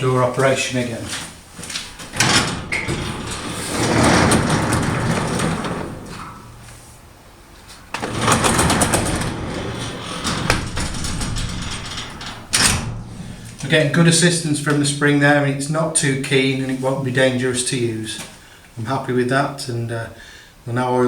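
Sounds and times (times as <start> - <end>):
metal garage door rumbling and rattling: 1.4 - 15.0.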